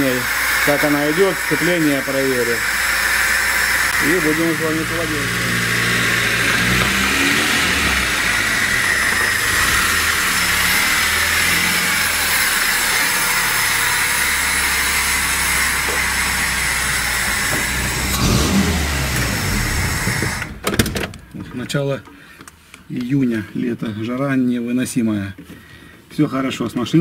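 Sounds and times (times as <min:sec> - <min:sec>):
car engine running: 0:00.3 - 0:21.6.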